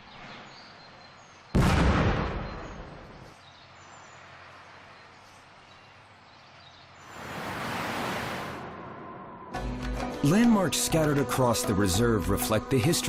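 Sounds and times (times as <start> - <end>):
faint outdoor ambience: 0.0 - 13.0
rumbling bang: 1.6 - 3.0
rush of noise: 7.1 - 9.5.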